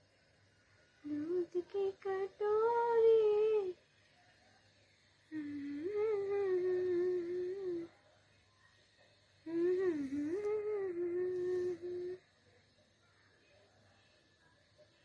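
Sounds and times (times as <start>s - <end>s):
person humming long tones: 1.0s - 3.8s, 5.3s - 7.9s, 9.5s - 12.2s.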